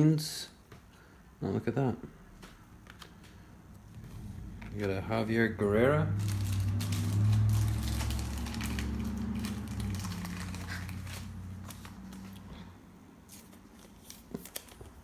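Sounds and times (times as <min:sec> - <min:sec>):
low hum: 0:03.7 - 0:12.8
foil wrappers crinkling: 0:06.1 - 0:12.5, 0:13.3 - 0:15.0.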